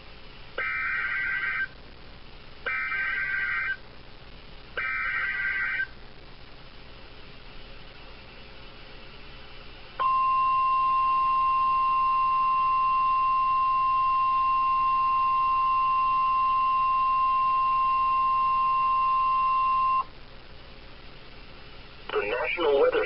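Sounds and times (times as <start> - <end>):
steady warning alarm tone: 0.6 - 1.7, 10.0 - 20.1.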